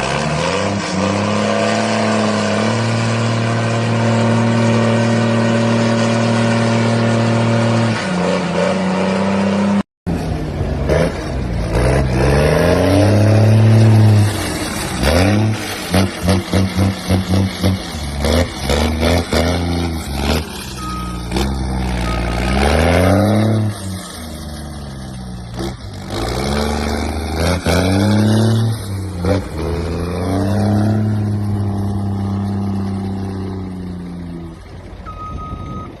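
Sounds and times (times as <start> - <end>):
engines revving loudly: 0.0 - 9.8, 10.8 - 34.6
short high beep: 20.8 - 22.6, 35.0 - 36.0.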